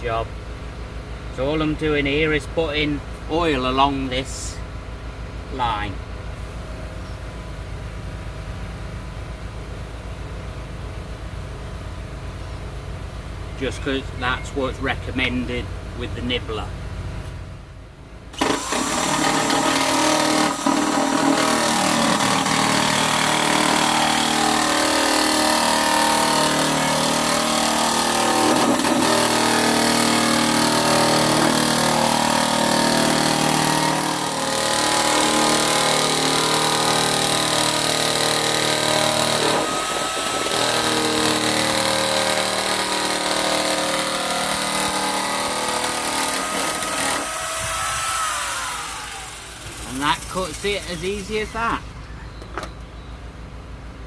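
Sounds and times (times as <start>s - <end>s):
power nibbler cutting metal: 18.4s - 51.8s.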